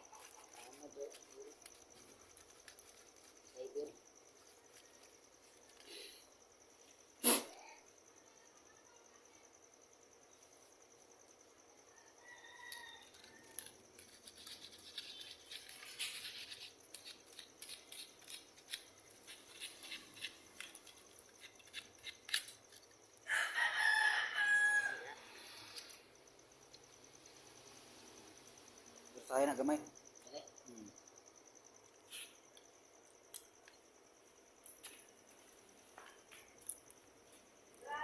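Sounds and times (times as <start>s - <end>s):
rooster crowing: 11.9s - 13.8s, 23.2s - 25.8s.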